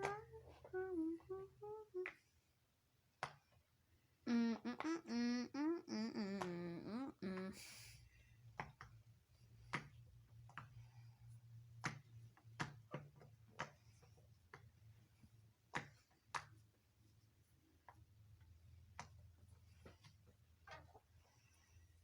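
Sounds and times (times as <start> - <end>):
low steady hum: 0.0 - 2.1, 4.2 - 8.4.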